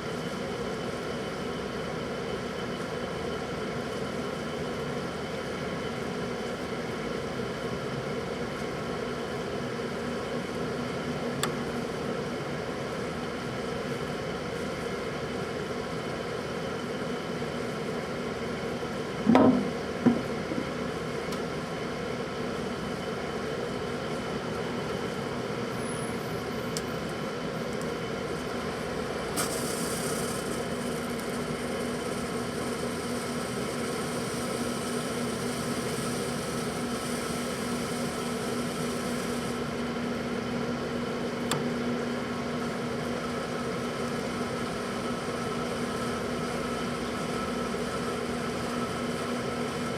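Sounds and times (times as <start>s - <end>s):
microwave oven humming: 0.0s - 49.9s
hiss: 28.7s - 40.0s.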